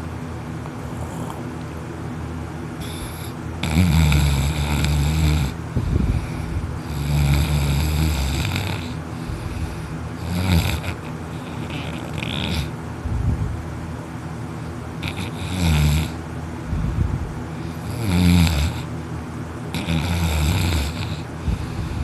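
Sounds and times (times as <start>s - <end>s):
man snoring heavily: 2.8s - 12.8s, 15.0s - 16.9s, 17.5s - 18.9s, 19.7s - 22.0s.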